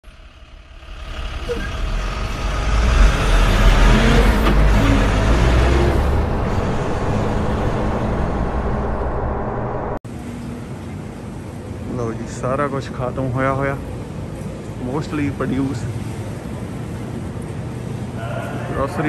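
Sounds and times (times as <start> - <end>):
vehicle engine and road noise: 0.0 - 12.1.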